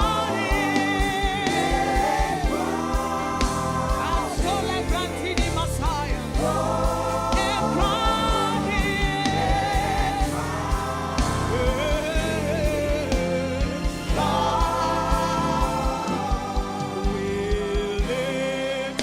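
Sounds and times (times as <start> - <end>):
steady low drum beat: 0.0 - 18.6
singing with vibrato: 0.0 - 19.0
sustained band chords: 0.0 - 19.0.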